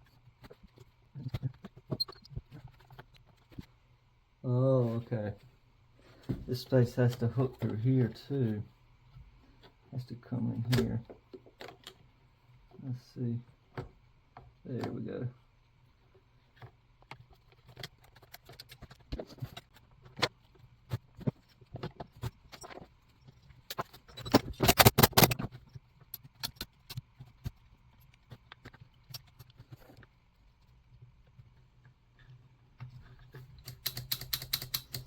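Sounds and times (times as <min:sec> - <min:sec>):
chainsaw parts clicking and rattling: 0:23.7 - 0:25.5, 0:33.4 - 0:35.0.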